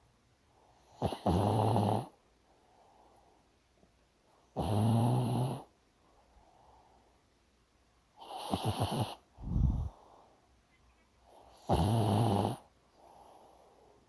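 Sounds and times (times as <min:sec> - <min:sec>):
dog snoring: 0:00.9 - 0:02.2, 0:04.5 - 0:05.7, 0:08.2 - 0:09.9, 0:11.3 - 0:13.6.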